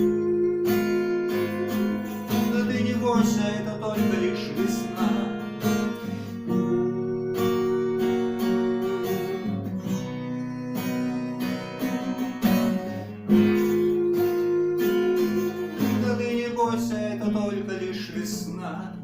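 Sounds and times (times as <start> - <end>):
acoustic guitar strumming chords: 0.0 - 19.0.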